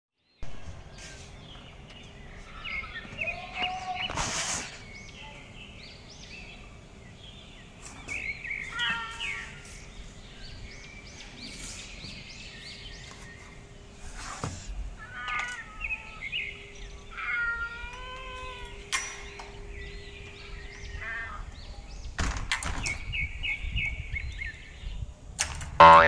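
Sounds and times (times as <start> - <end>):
small birds chirping: 0.2 - 25.2
cats meowing: 2.5 - 4.2, 15.0 - 21.6.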